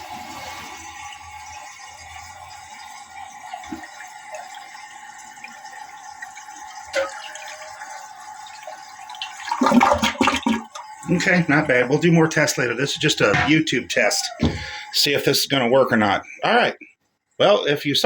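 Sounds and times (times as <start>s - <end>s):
toilet refilling water hiss: 0.0s - 16.8s.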